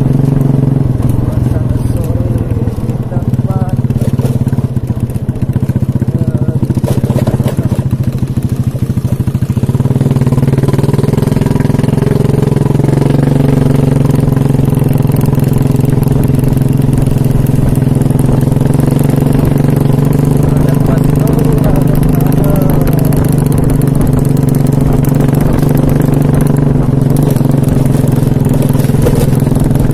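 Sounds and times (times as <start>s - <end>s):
small motorcycle engine running: 0.0s - 29.9s.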